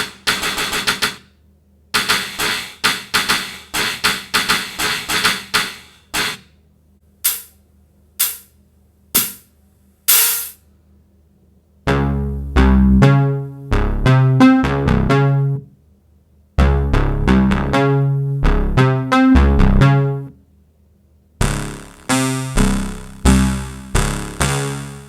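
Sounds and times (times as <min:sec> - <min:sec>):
sharp knocks: 0:09.2 - 0:09.5.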